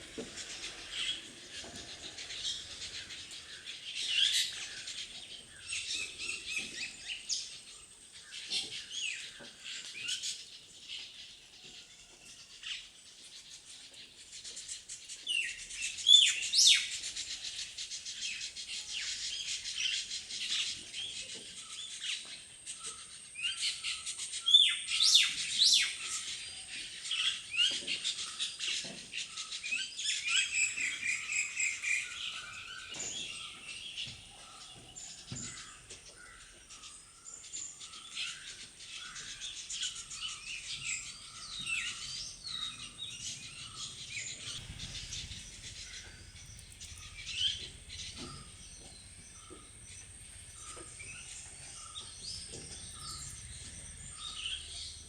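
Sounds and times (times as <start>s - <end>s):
many birds chirping: 0.0s - 55.0s.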